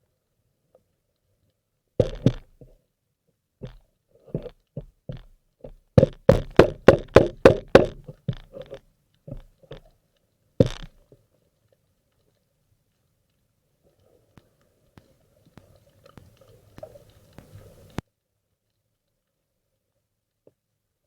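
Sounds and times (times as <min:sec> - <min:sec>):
sharp knocks: 0:06.0 - 0:09.5, 0:10.6 - 0:10.9.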